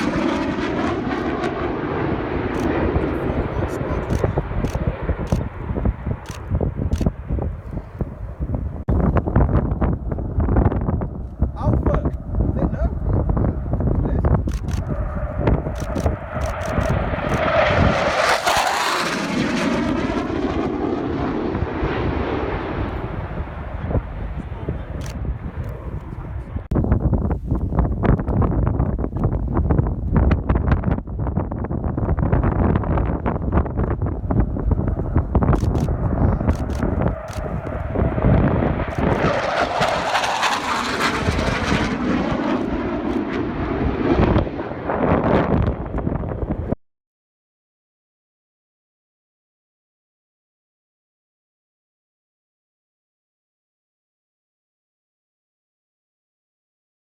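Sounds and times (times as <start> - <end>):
jet passing overhead: 0.0 - 8.9, 12.1 - 26.7, 33.1 - 46.8.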